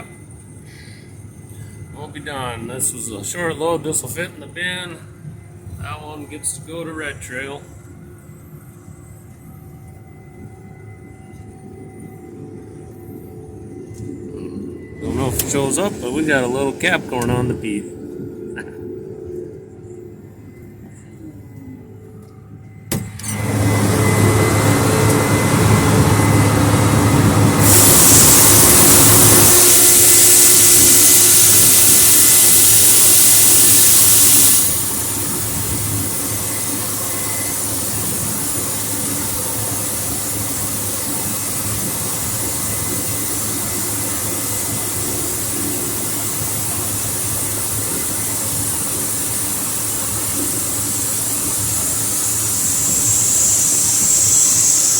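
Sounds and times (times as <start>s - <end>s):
low hum: 0.0s - 54.9s
combine harvester running: 9.3s - 54.9s
loud hissing: 14.4s - 17.9s, 23.0s - 54.9s.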